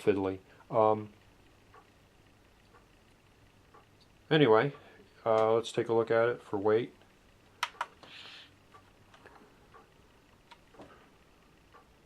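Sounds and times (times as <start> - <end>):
sharp clicks: 7.0 - 8.1.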